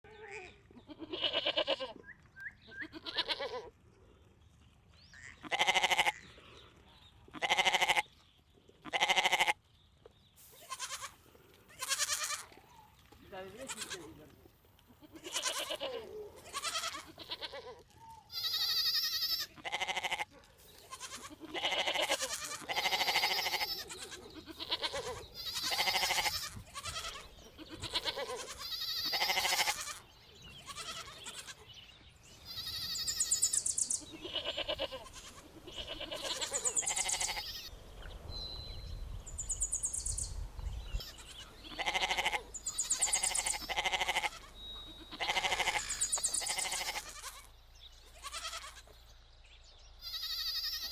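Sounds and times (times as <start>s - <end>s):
baby goats bleating: 0.1s - 2.0s, 2.7s - 3.8s, 5.2s - 6.2s, 7.3s - 8.2s, 8.8s - 9.6s, 10.5s - 14.2s, 14.8s - 31.8s, 32.4s - 37.7s, 41.0s - 47.5s, 48.1s - 49.0s, 50.0s - 50.9s.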